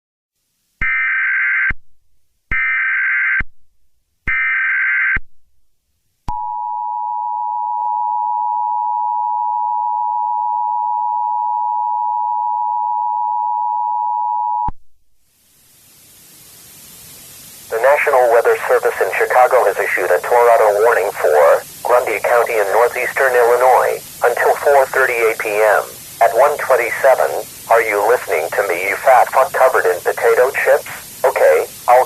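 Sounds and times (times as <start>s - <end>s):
static hiss: 15.2s - 32.0s
warbling data bursts: 17.7s - 32.0s.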